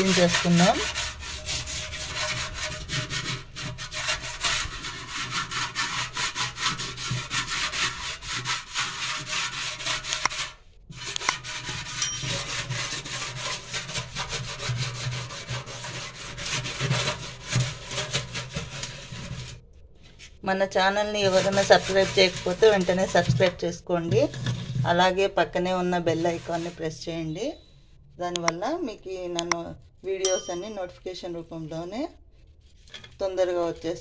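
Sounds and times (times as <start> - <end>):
lemon scrubbing steel sink: 0.0 - 19.6, 21.1 - 27.0, 30.2 - 30.9.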